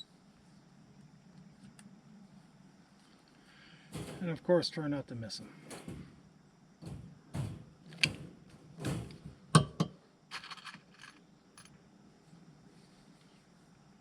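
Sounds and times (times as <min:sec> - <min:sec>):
light metal rattle: 0:03.9 - 0:04.4, 0:05.5 - 0:11.7.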